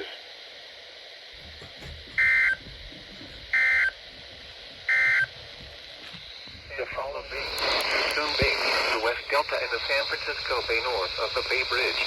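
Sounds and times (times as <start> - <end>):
faint radio hiss: 0.0 - 12.0
two-tone digital data warble: 2.2 - 2.6, 3.5 - 4.0, 4.9 - 5.3.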